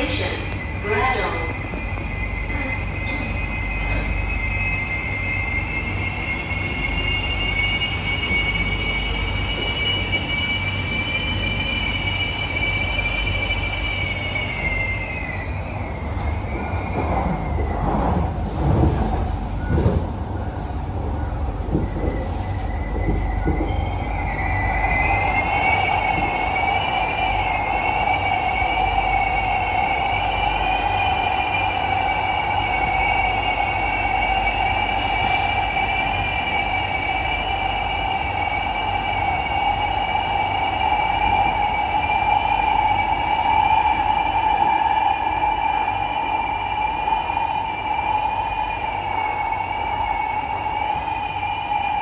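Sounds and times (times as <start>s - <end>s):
train rumble: 0.0s - 52.0s
train wheels screeching on rails: 0.0s - 52.0s.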